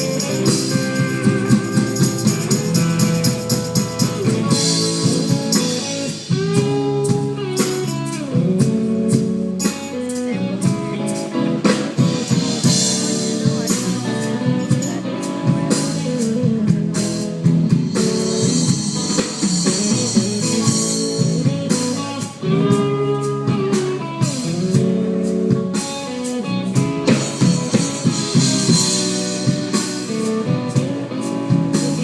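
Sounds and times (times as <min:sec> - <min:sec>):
drums with cymbal hits: 0:00.0 - 0:32.0
electric guitar melody: 0:00.0 - 0:32.0.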